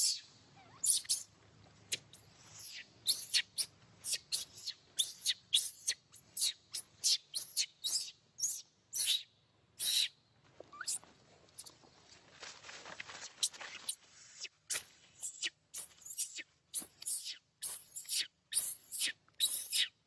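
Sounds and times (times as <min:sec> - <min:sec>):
baby monkey crying squeals: 0:00.0 - 0:01.3, 0:15.2 - 0:19.9.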